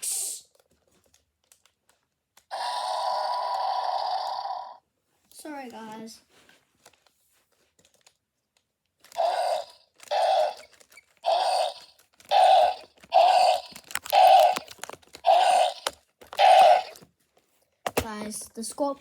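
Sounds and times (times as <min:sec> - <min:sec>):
dinosaur roars: 0:02.5 - 0:04.8, 0:09.2 - 0:10.6, 0:11.3 - 0:14.7, 0:15.3 - 0:17.0.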